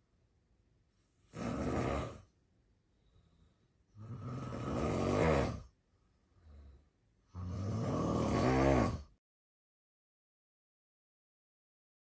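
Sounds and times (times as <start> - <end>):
man snoring: 1.2 - 2.3, 3.9 - 5.8, 6.4 - 9.2
faint breath: 2.8 - 4.0, 5.8 - 7.2.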